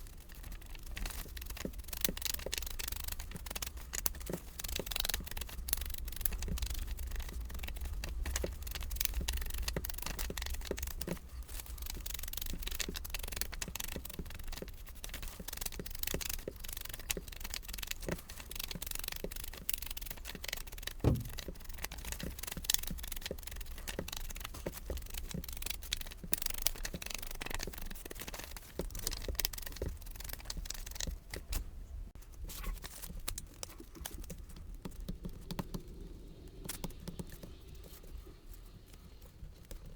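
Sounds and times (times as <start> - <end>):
sharp knock: 21.0 - 21.4.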